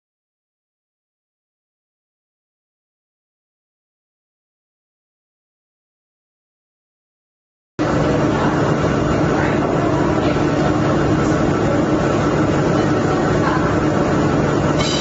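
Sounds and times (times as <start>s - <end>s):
machine running with low hum: 7.8s - 15.0s.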